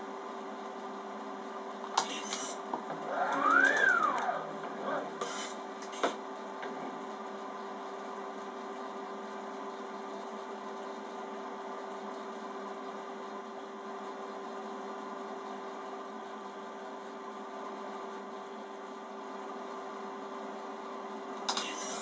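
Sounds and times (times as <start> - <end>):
machine humming: 2.0 - 7.3.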